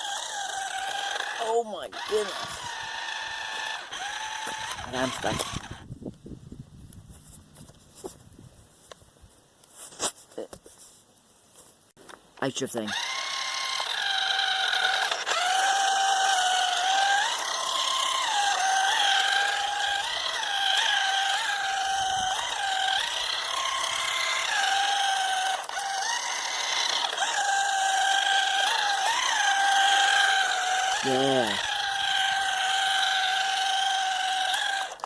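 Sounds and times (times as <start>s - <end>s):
toy car electric motor whining: 0.0s - 5.9s, 12.8s - 35.0s.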